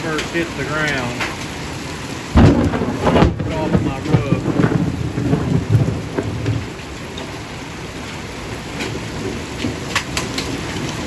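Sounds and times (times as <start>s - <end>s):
hailstones striking roof: 0.0s - 11.0s
heavy rain on roof: 0.0s - 11.0s
low rumble: 2.4s - 7.0s.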